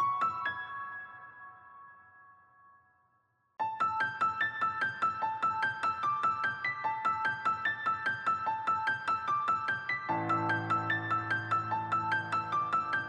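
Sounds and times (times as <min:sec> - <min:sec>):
piano music: 0:03.6 - 0:13.0.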